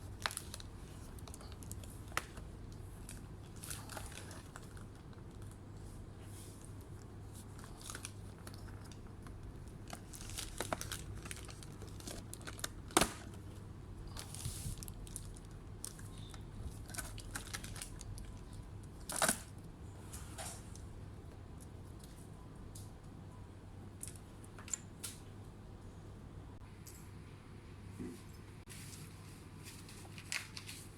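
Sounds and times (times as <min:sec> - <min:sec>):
plastic crinkling and tearing: 0:00.0 - 0:05.9, 0:06.5 - 0:19.6, 0:29.6 - 0:30.9.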